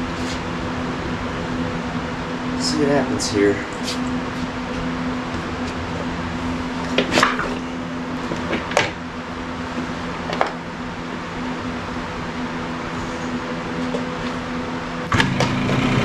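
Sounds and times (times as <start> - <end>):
motorcycle kick-start clunks: 15.1 - 16.0.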